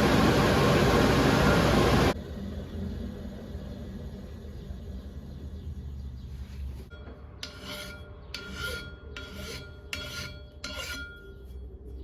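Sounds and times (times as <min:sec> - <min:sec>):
low machine hum: 0:00.0 - 0:07.4
lathe tool rasping scrape: 0:07.4 - 0:11.0.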